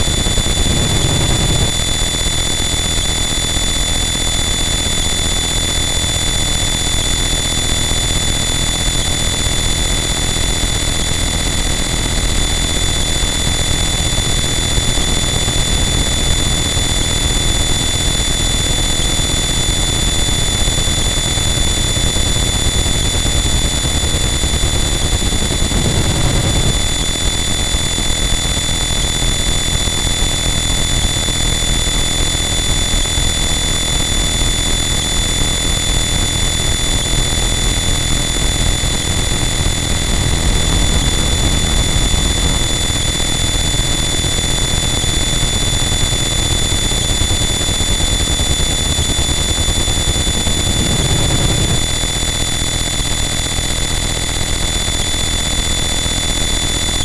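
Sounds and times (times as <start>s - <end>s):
dense distorted static: 0.0s - 2.0s, 22.7s - 27.8s, 36.0s - 46.8s, 49.3s - 52.8s.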